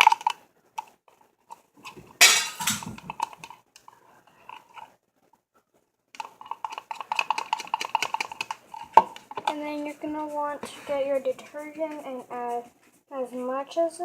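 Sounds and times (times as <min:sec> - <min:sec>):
utensil stirring glue in container: 0:06.2 - 0:12.7.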